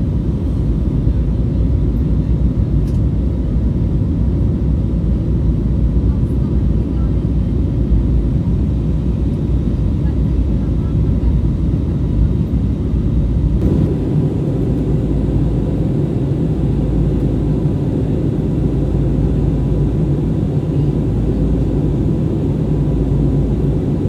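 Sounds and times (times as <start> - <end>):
jet engines rumbling in cabin: 0.0 - 24.0
rushing air: 13.6 - 18.9
faint constant whine: 13.6 - 19.0.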